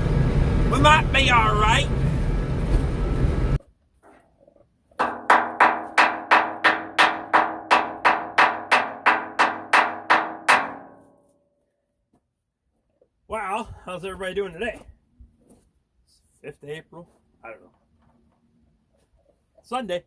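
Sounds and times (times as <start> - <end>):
vehicle noise: 0.0 - 3.6
hammer striking metal: 5.0 - 11.3.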